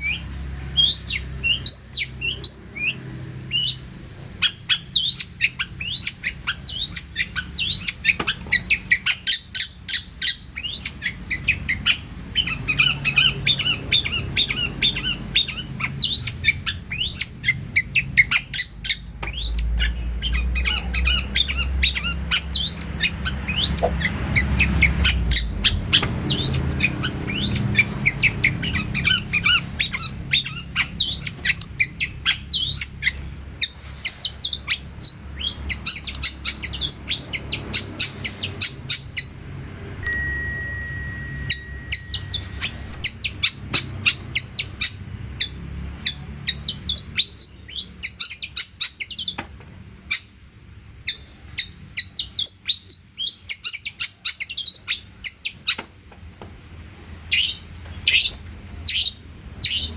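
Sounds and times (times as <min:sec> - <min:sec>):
shrike singing varied chirps: 0:40.0 - 0:49.4.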